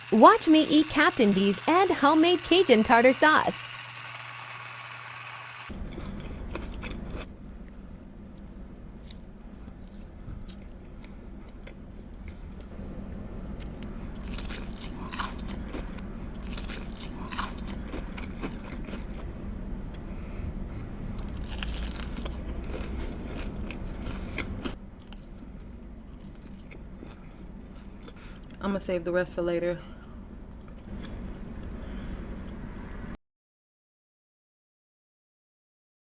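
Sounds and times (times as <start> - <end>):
steady low hum: 0.0 - 33.2
person chewing crunchy food: 5.7 - 12.8, 13.5 - 19.3, 20.7 - 28.6.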